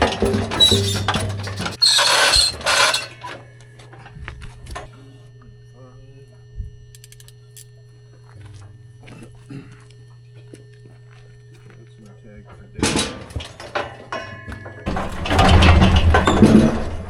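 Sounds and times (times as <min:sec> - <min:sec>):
metal chute rattling and clanking: 0:00.0 - 0:03.4, 0:12.8 - 0:17.0
low hum: 0:02.4 - 0:17.0.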